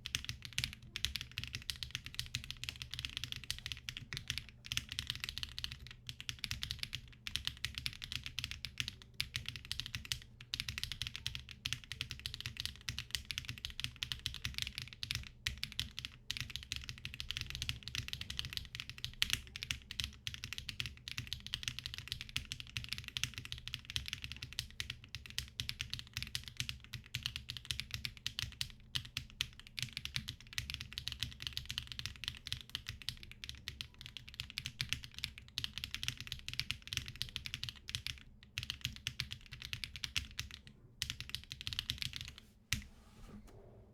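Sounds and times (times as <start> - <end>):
mechanical keyboard typing: 0.0 - 42.4.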